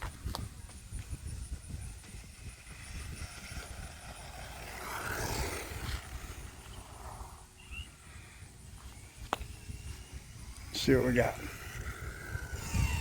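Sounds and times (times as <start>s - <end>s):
steady low rumble: 0.0s - 13.0s
vehicle passing by: 2.1s - 7.9s.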